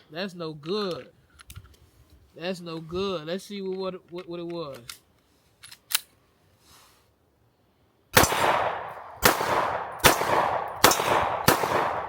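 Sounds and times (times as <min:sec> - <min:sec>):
pistol handling clicks: 0:03.7 - 0:05.0, 0:05.6 - 0:06.1
pistol shots: 0:08.2 - 0:12.0.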